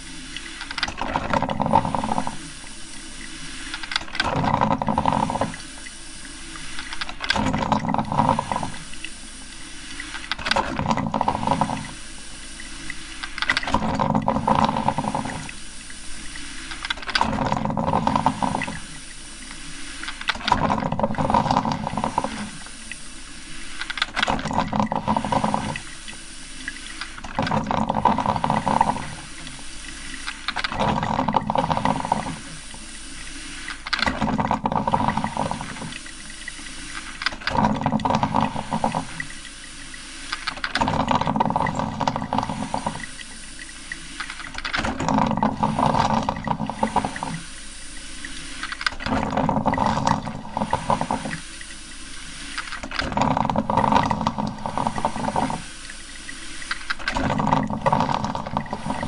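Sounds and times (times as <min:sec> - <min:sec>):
steady hiss: 0:00.0 - 0:00.8, 0:01.9 - 0:04.0, 0:05.2 - 0:07.3, 0:08.0 - 0:10.5, 0:11.4 - 0:13.6, 0:14.4 - 0:17.1, 0:18.0 - 0:20.3, 0:21.7 - 0:24.2, 0:25.0 - 0:27.3, 0:27.9 - 0:30.7, 0:31.6 - 0:34.0, 0:34.7 - 0:37.5, 0:38.3 - 0:44.7, 0:45.6 - 0:48.9, 0:50.4 - 0:52.9, 0:53.6 - 0:57.1
coffee maker gurgling: 0:00.0 - 0:59.0.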